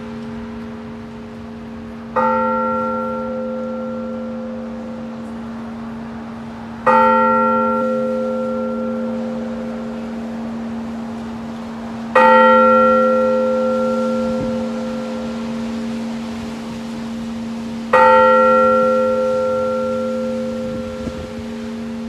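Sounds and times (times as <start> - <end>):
church bell tolling: 0.0 - 22.0.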